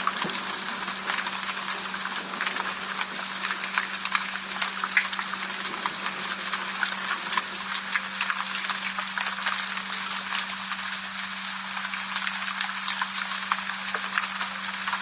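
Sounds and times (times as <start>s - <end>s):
low hum: 0.0s - 9.0s
rain drops on hard surface: 0.0s - 15.0s.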